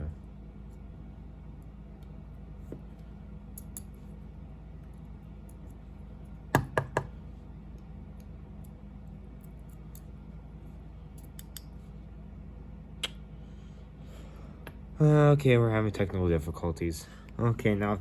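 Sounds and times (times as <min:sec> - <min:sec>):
steady low hum: 0:00.0 - 0:18.0
sharp clicks of small parts: 0:03.6 - 0:04.0, 0:09.4 - 0:10.1, 0:11.2 - 0:11.7.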